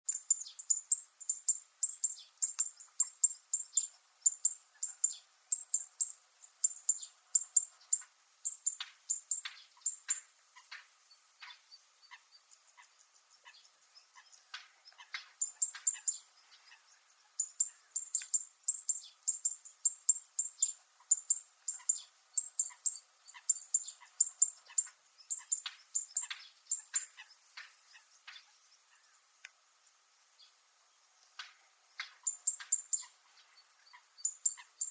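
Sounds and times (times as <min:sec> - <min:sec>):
bird singing high zit notes: 0:11.4 - 0:29.2.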